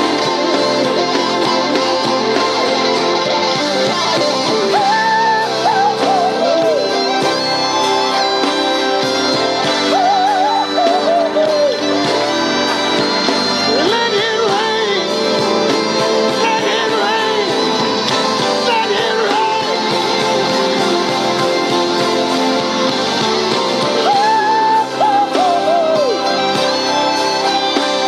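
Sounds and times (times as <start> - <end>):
guitar: 0.0 - 28.0
person singing: 0.0 - 28.0
sustained instrumental chords: 0.0 - 28.0.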